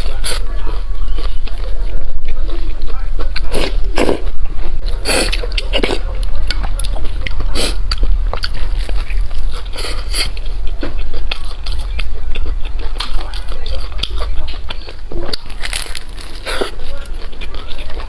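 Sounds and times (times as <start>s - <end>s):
biting and chewing: 0.0s - 18.0s
crisp crackles: 15.4s - 17.2s.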